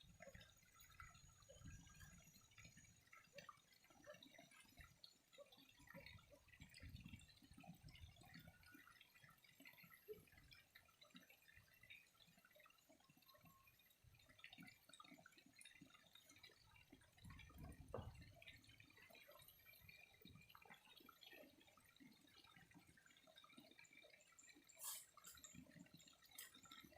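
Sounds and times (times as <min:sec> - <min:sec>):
water trickling and dripping: 0:00.0 - 0:26.9.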